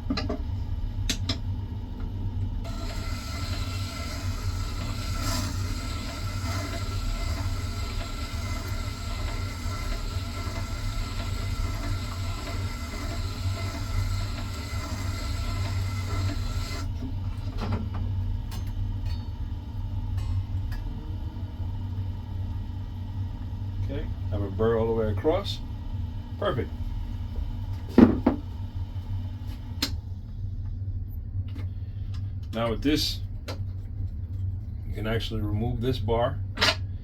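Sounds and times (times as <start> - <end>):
sharpener motor humming: 2.6 - 16.9
chisel grinding on stone: 2.7 - 16.8.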